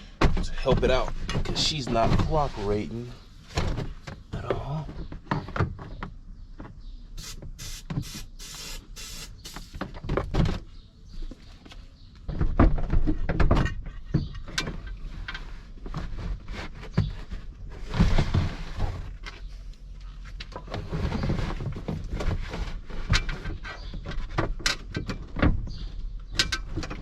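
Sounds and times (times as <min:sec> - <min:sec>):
aerosol can spraying: 0:07.2 - 0:09.8.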